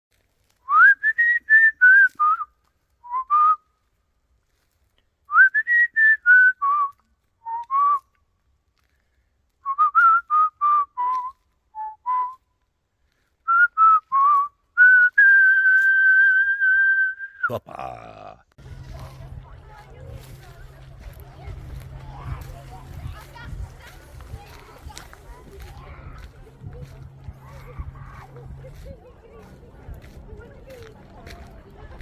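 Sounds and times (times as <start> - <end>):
person whistling a tune: 0.7 - 3.6, 5.3 - 8.1, 9.6 - 12.4, 13.5 - 17.5.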